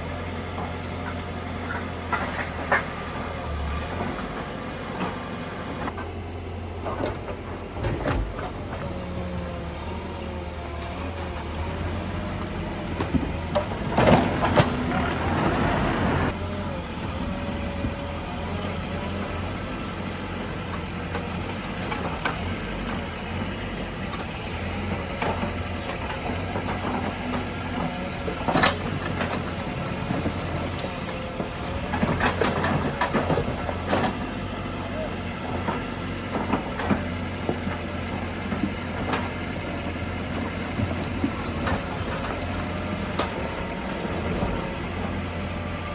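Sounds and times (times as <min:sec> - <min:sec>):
diesel engine running: 0:00.0 - 0:45.9
loud machinery clatter: 0:00.5 - 0:45.9.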